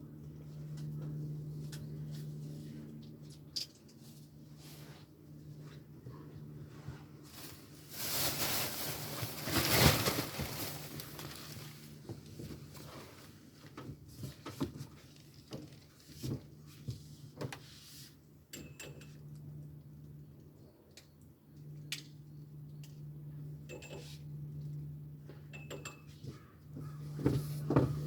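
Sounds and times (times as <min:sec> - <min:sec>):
steady low hum: 0:00.0 - 0:14.1
rustling and handling noise: 0:02.0 - 0:18.2.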